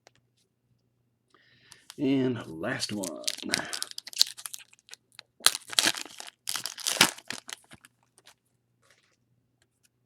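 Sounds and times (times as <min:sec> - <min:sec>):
wrapper tearing and crinkling: 0:02.9 - 0:07.9.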